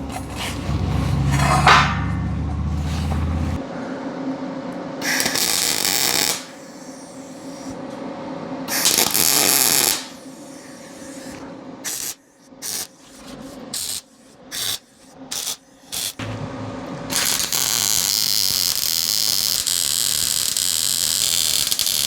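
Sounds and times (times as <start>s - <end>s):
arc welding crackling: 5.0s - 7.8s, 8.7s - 16.2s, 17.0s - 22.0s.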